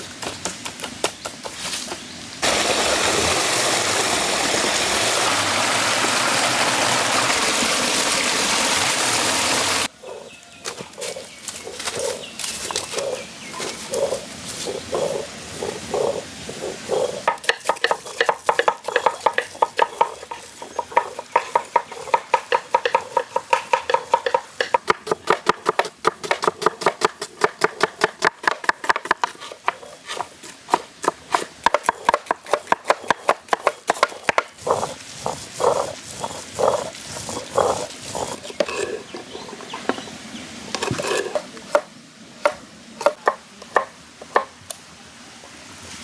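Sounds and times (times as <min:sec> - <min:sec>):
hands mixing wet food: 0:17.2 - 0:26.0, 0:28.5 - 0:39.5.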